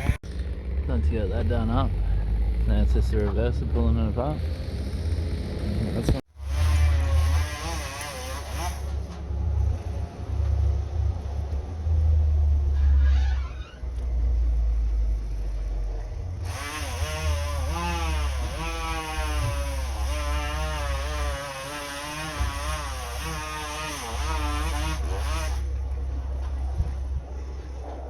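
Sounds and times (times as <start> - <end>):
chainsaw running: 3.8 - 9.2, 16.3 - 26.0
steady low rumble: 9.0 - 16.5, 25.6 - 28.0.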